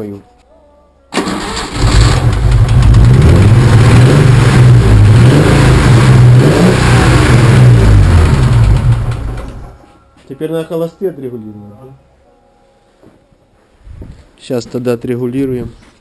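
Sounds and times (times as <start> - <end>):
car engine running: 1.7 - 9.8.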